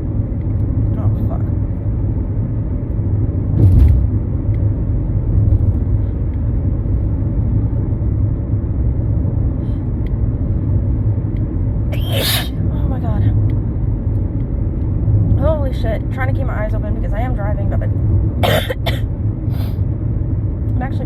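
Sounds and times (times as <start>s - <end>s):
car cabin rumble: 0.0s - 21.0s
sharp burst of breath: 12.0s - 12.6s, 19.5s - 19.8s.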